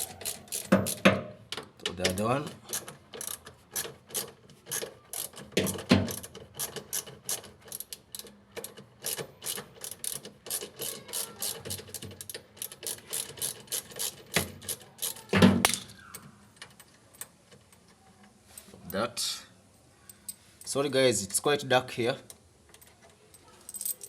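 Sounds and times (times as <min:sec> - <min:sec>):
ratchet wrench clicking: 0:00.0 - 0:01.1, 0:02.0 - 0:15.3.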